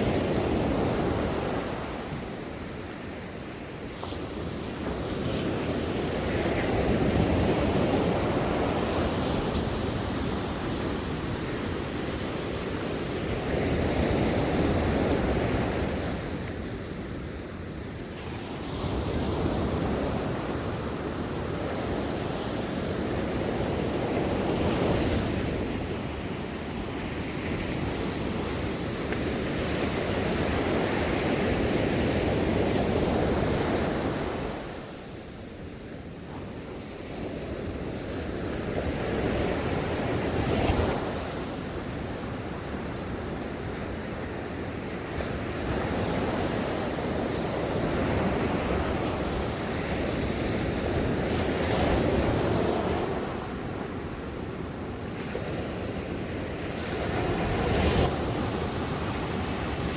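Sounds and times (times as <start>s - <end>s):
ocean waves breaking on shore: 18.4s - 59.9s.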